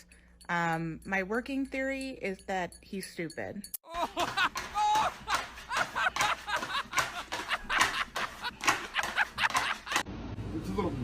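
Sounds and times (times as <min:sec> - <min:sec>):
person laughing: 0:03.8 - 0:10.0.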